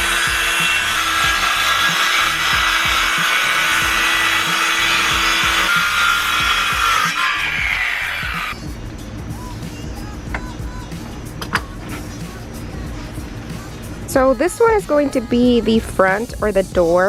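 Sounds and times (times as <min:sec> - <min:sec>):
circular saw cutting board: 0:00.0 - 0:08.6.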